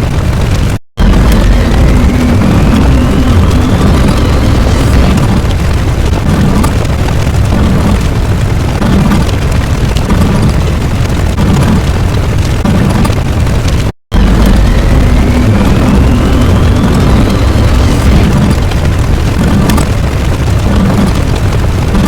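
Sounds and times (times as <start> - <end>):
low rumbling: 0.0 - 22.0
faint rising whine: 1.0 - 8.3, 14.1 - 21.4.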